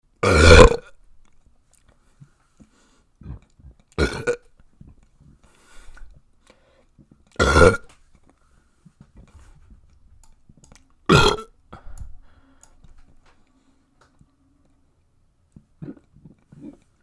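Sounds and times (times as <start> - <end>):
person burping loudly: 0.2 - 1.0, 3.2 - 4.5, 7.4 - 7.9, 11.1 - 11.6.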